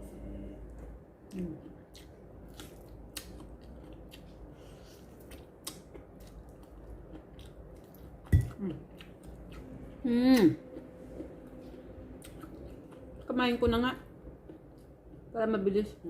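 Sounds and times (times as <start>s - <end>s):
chewing smacks: 1.6s - 4.4s, 5.0s - 9.7s, 10.7s - 13.3s.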